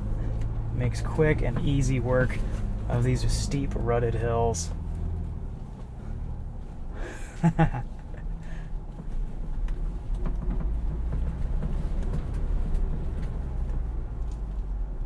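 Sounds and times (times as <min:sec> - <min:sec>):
engine low rumble: 0:00.0 - 0:15.0
light knocks and rattles: 0:08.9 - 0:14.6.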